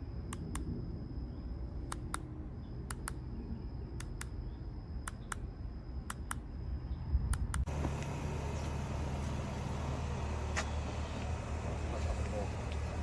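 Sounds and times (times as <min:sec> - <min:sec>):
sharp clicks in pairs: 0:02.9 - 0:03.2, 0:04.0 - 0:04.4, 0:05.0 - 0:05.4.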